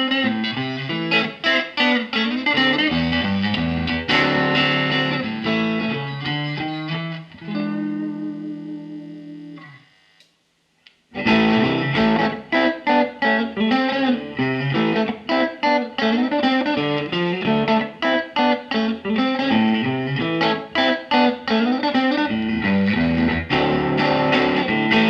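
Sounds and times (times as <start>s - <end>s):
electric guitar riff: 0.0s - 10.0s, 11.1s - 25.0s
small click: 9.6s - 11.0s.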